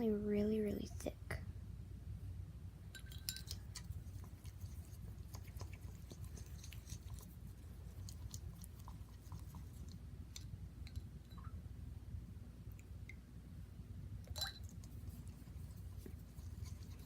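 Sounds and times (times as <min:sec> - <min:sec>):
low steady hum: 0:00.0 - 0:17.0
slime squelching: 0:03.4 - 0:10.5, 0:14.3 - 0:17.0.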